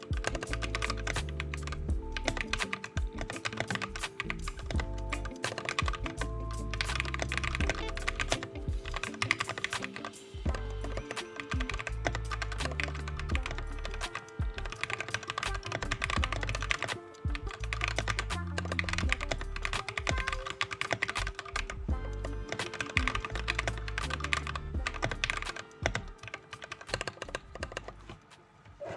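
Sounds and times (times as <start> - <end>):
background music with bass line: 0.0 - 14.8, 15.4 - 20.5, 21.2 - 26.2
fast typing on mechanical keyboard: 0.0 - 28.2.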